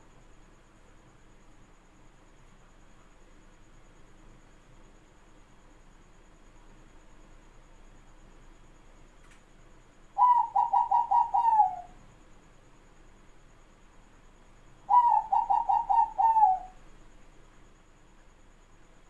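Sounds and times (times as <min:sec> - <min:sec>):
dove cooing: 0:10.2 - 0:12.0, 0:14.9 - 0:16.8.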